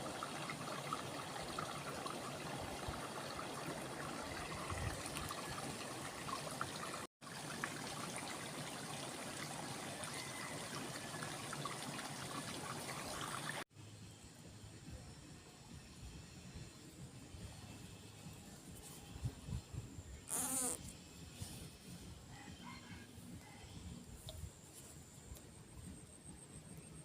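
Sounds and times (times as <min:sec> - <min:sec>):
stream water trickling: 0:00.0 - 0:13.7.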